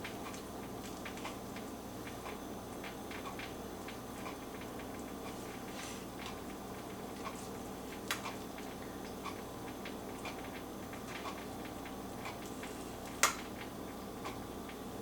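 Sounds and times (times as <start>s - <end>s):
steady low hum: 0.0s - 15.0s
faint regular ticking: 6.2s - 14.8s.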